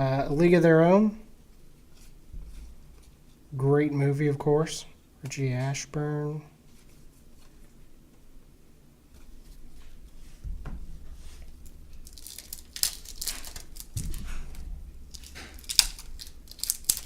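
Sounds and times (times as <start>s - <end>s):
dull bumps: 10.4s - 11.2s
wrapper crinkling and tearing: 11.9s - 17.0s.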